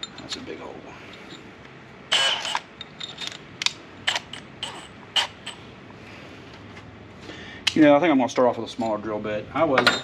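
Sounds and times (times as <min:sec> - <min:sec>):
metallic clicks of drill bits: 0:02.1 - 0:05.6.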